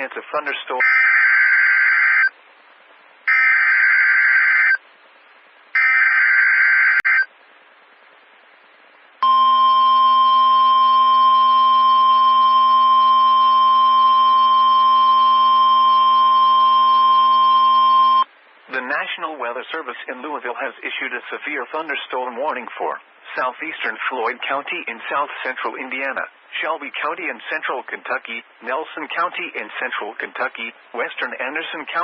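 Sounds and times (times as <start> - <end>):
steady warning alarm tone: 9.2 - 18.2.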